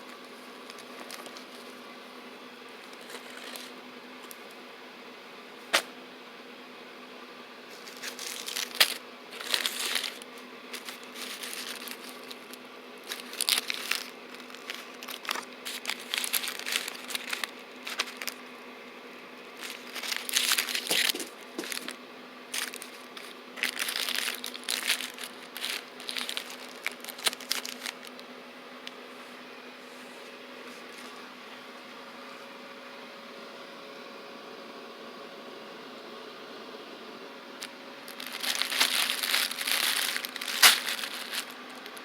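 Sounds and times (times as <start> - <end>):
paper and cellophane crinkling: 0.0 - 1.8, 2.8 - 3.8, 7.7 - 18.4, 19.6 - 28.2, 37.6 - 42.0
packs set down clicking: 19.6 - 22.0, 37.6 - 42.0.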